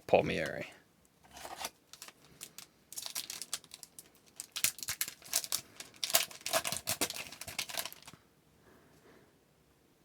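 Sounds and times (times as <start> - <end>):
foil wrapper crinkling and tearing: 1.3 - 8.2.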